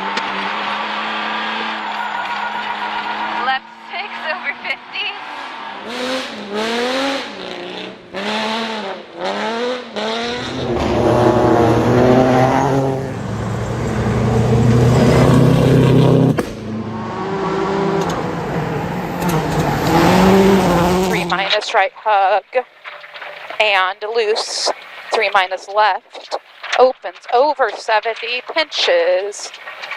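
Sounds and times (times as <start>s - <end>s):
car engine revving: 0.0s - 21.6s.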